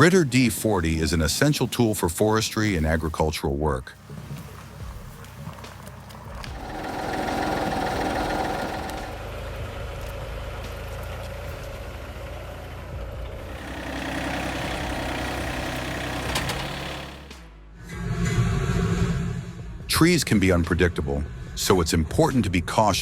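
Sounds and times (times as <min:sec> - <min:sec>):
engine running: 0:04.0 - 0:19.8.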